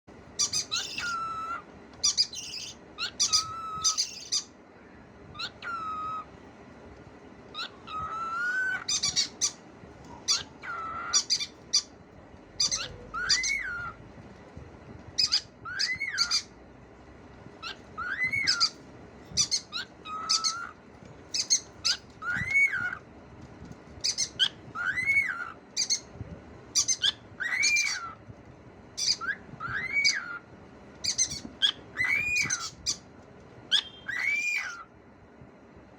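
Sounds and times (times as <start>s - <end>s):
cockatiel chirping and whistling: 0.4s - 4.5s, 5.3s - 6.3s, 7.6s - 9.6s, 10.3s - 11.9s, 12.6s - 14.0s, 15.2s - 16.5s, 17.6s - 23.0s, 24.0s - 26.1s, 26.7s - 28.2s, 29.0s - 30.4s, 31.0s - 33.0s, 33.7s - 34.9s.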